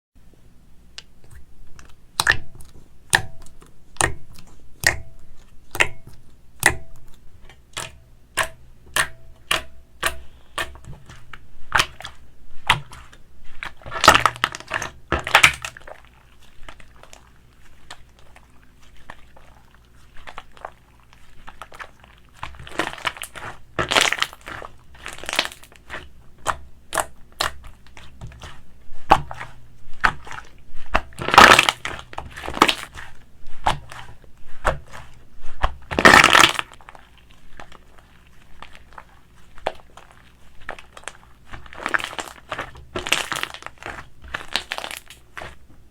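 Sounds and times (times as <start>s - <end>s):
crunchy crackling squishes: 1.0s - 45.9s
slime squeezed by hand: 7.8s - 45.6s.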